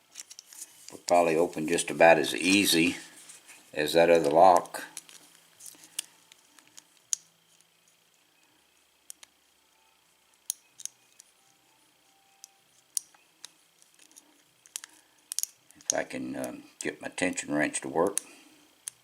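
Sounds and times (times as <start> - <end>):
small metallic clicks: 12.4 - 16.0.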